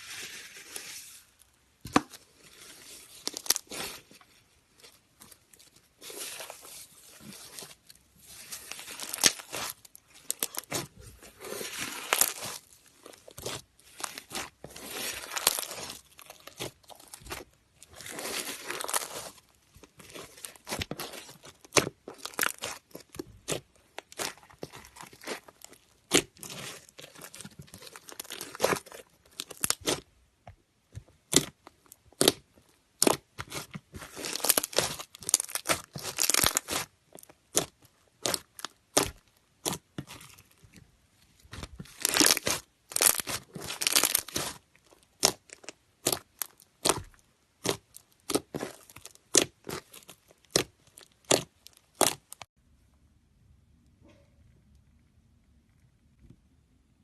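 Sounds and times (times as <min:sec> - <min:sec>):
slime popping and crackling: 0:08.3 - 0:30.0, 0:31.3 - 0:40.4, 0:41.5 - 0:52.5.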